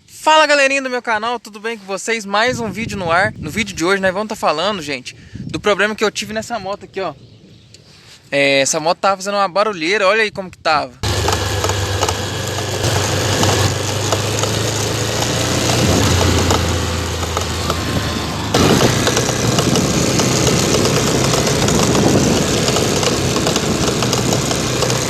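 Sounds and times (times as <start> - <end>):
motorcycle engine running: 11.0 - 25.0
rapid clicking from rear wheel: 11.0 - 25.0.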